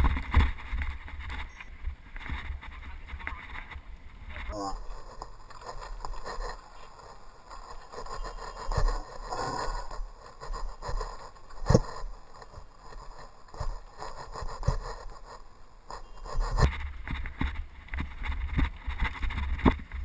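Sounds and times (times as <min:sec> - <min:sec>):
sharp knocks from bumps: 0:00.0 - 0:04.6
bike rattling: 0:00.0 - 0:20.0
bike tyres on rough trail: 0:00.0 - 0:20.0.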